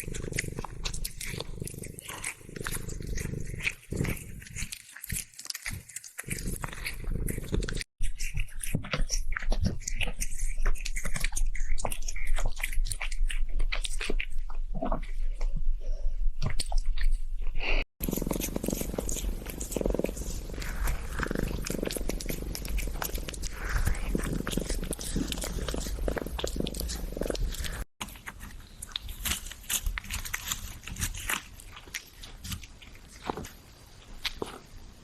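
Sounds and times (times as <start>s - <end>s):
cat chewing on a toy: 0.0s - 15.3s, 17.9s - 34.8s.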